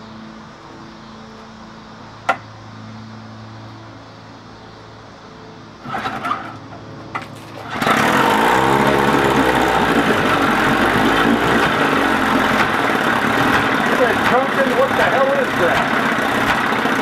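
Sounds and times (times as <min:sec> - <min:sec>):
outboard motor pull-starting: 0:05.8 - 0:17.0
outboard motor running: 0:07.6 - 0:17.0.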